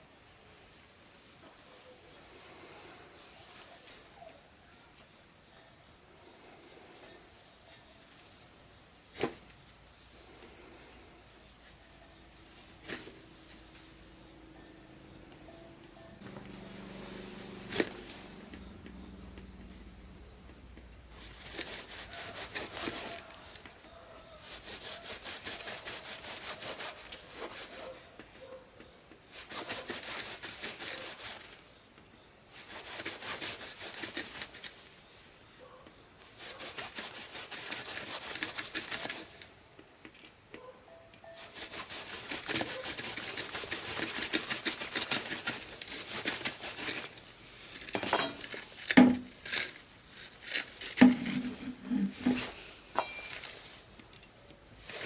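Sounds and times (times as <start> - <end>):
rapid rubbing strokes: 12.4 - 28.1, 32.5 - 34.8, 36.3 - 39.4, 41.4 - 47.1.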